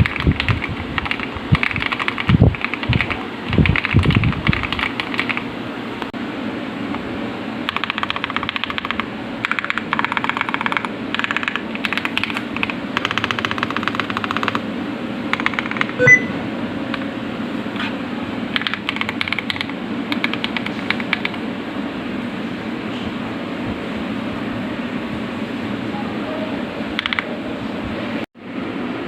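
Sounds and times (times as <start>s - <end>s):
mechanical keyboard typing: 0.0s - 5.4s, 7.7s - 14.6s, 15.3s - 16.2s, 18.5s - 21.4s, 27.0s - 27.3s.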